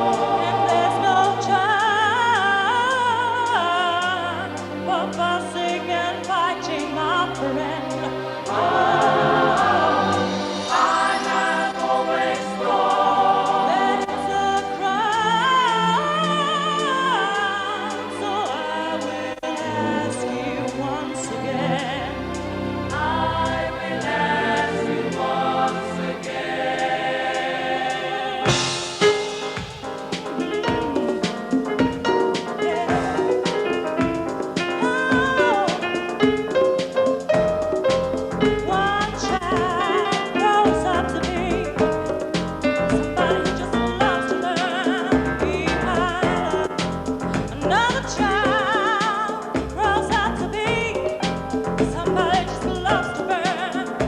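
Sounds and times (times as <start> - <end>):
light percussion beat: 0.0 - 15.3, 22.9 - 54.0
voices singing: 0.0 - 37.7, 38.4 - 54.0
backing music: 0.0 - 54.0
cymbal crash: 9.6 - 12.7, 28.5 - 31.7
sharp drum hits: 28.5 - 35.4.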